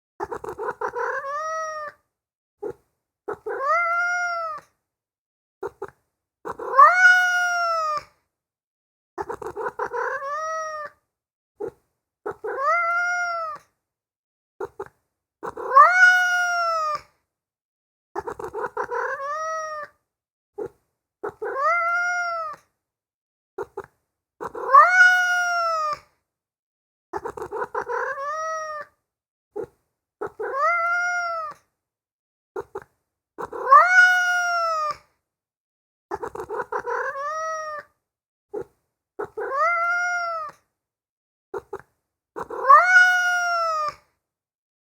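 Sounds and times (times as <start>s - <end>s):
cat meowing: 0.2s - 2.0s, 2.6s - 4.7s, 6.5s - 8.1s, 9.2s - 11.0s, 12.3s - 13.7s, 15.4s - 17.1s, 18.2s - 20.0s, 20.6s - 22.7s, 24.4s - 26.0s, 27.2s - 29.0s, 29.6s - 31.6s, 32.6s - 35.0s, 36.1s - 38.0s, 38.6s - 40.6s, 42.4s - 44.0s.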